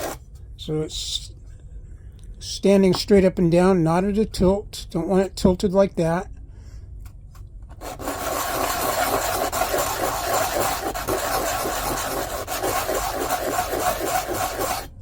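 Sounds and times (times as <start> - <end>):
plastic rubbed on sandpaper: 7.8 - 14.9.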